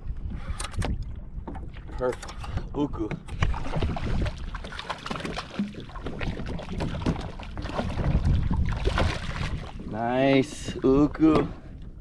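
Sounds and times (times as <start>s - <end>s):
low wind: 0.0s - 12.0s
water noise: 0.0s - 12.0s.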